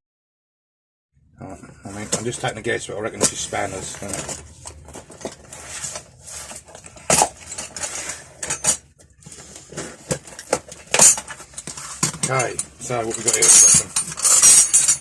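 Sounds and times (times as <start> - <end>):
metal hand tools clinking: 10.9 - 15.0.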